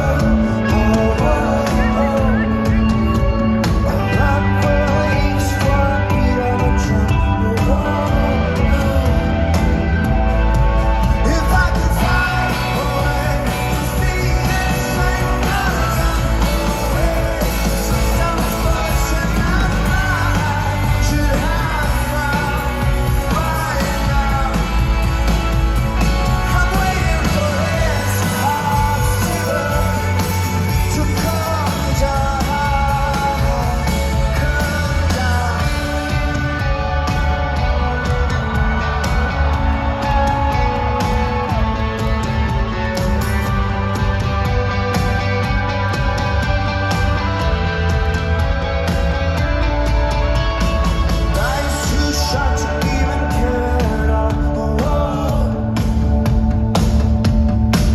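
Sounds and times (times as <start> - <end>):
drums: 0.0 - 57.9
heavy bass: 0.0 - 57.9
lead vocal singing: 0.0 - 57.9
rock band playing: 0.0 - 57.9.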